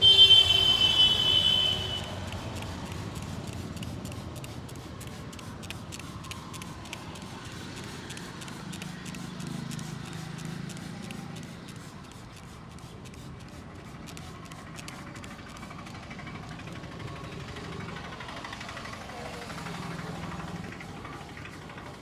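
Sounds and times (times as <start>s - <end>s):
low hum of street traffic: 0.0s - 22.0s
hands rubbing and tapping a head: 2.0s - 16.7s.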